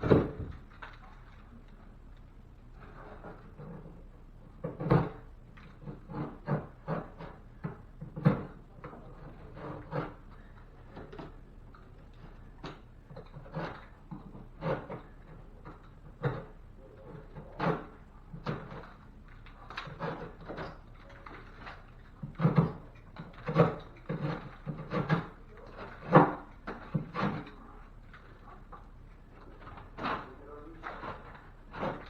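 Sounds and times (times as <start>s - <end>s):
knocks from handling drywall and tools: 5.9s - 9.0s.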